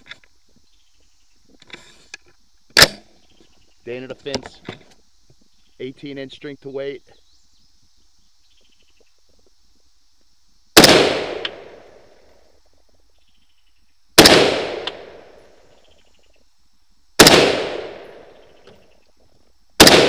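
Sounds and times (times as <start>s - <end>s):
rifle shots with rolling echo: 10.8s - 12.2s, 14.2s - 15.6s, 17.2s - 18.5s, 19.8s - 20.0s.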